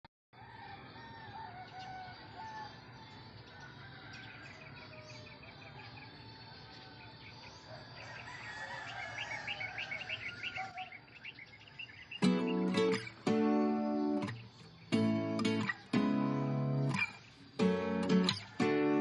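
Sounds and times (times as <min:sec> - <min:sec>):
birds chirping: 0:00.4 - 0:19.0.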